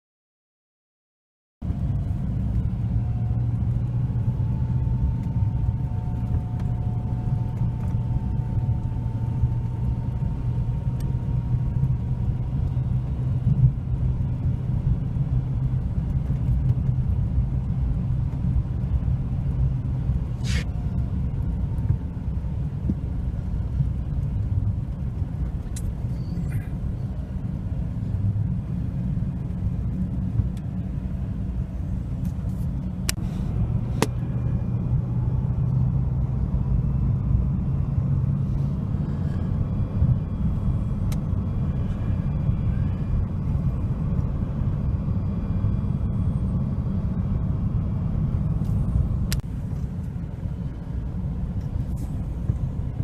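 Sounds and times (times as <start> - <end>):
low rumble: 1.6 - 53.0.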